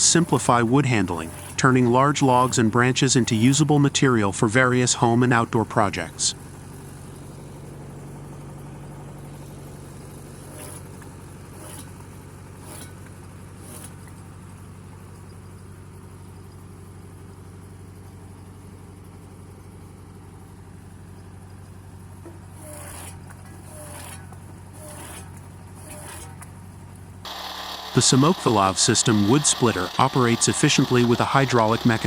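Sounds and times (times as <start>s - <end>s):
machine motor running: 0.0s - 4.0s, 5.6s - 15.0s, 22.2s - 32.0s.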